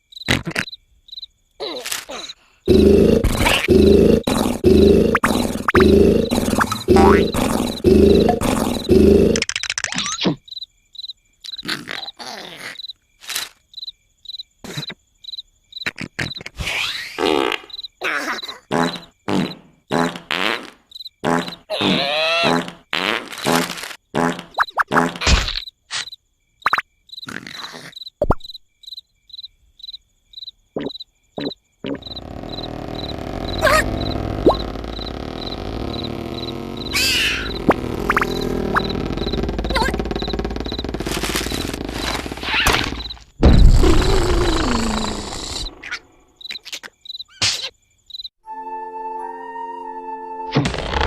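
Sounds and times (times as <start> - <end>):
cricket chirping: 0.0 - 48.4
cartoon growl: 1.6 - 9.4, 21.7 - 22.8, 31.9 - 42.9, 43.6 - 46.0
rough steady sound: 2.7 - 9.4, 32.0 - 45.4.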